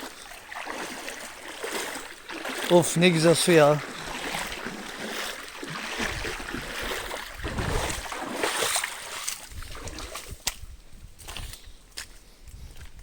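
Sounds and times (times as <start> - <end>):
water splashing around wading legs: 0.0 - 11.6
wind rumbling on microphone: 5.7 - 13.0.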